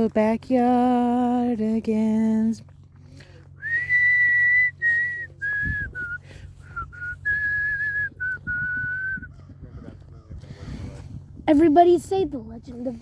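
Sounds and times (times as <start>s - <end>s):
person whistling a tune: 3.6s - 9.3s.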